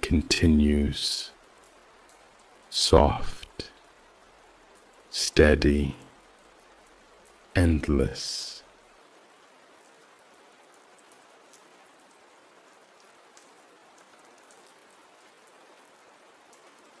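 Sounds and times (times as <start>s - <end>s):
rain falling: 0.0s - 17.0s
raindrop ticks: 1.2s - 17.0s.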